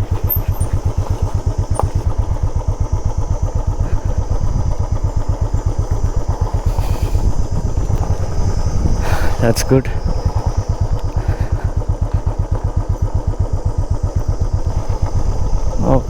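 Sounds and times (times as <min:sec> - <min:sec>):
motorcycle engine at low revs: 0:00.0 - 0:16.0.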